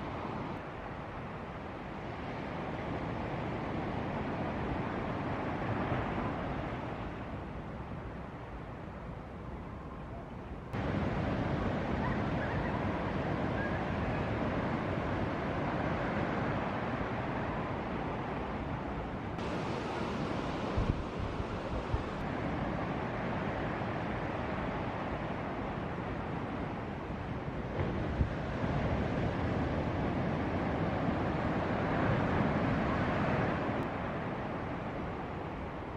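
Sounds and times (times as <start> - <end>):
ocean surf breaking: 10.8 - 18.7, 19.3 - 25.9, 26.6 - 35.9
wind buffeting microphone: 19.2 - 22.3.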